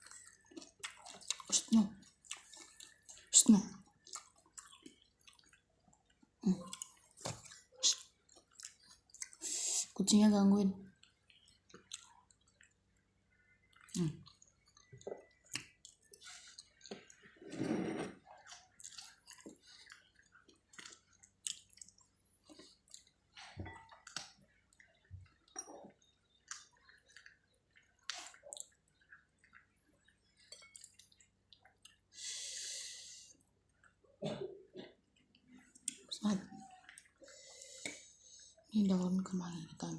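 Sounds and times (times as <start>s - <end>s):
slurp: 16.3s - 20.0s
lips and tongue smacking: 35.2s - 38.0s.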